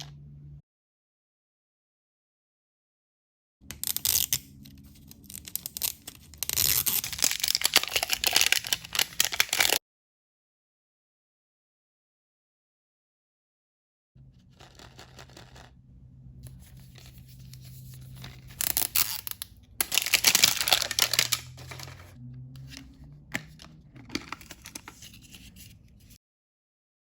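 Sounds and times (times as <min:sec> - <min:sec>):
plastic wrapper tearing and crinkling: 0:03.8 - 0:09.8, 0:17.9 - 0:22.1.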